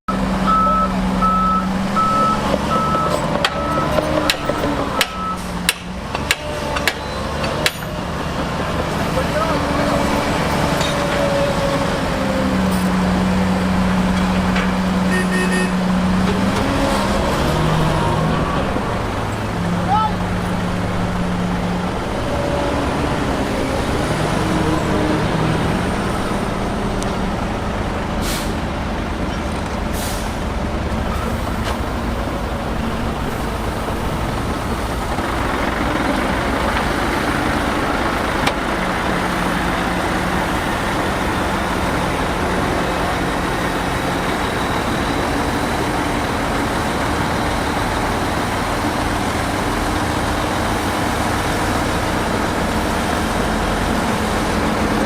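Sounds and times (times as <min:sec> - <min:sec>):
heavy diesel engine running: 0:00.1 - 0:55.0
short air hisses: 0:28.2 - 0:28.6.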